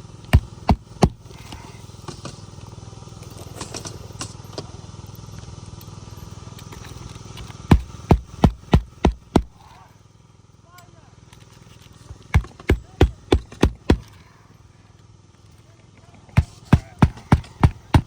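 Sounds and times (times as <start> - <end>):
hammer blows on shingle roof: 0.3 - 1.4, 7.7 - 9.6, 12.2 - 14.2, 16.4 - 18.0.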